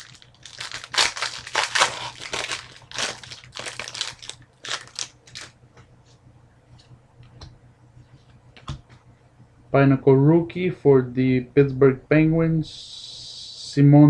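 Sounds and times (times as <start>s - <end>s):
wrapper tearing and crinkling: 0.0s - 5.5s.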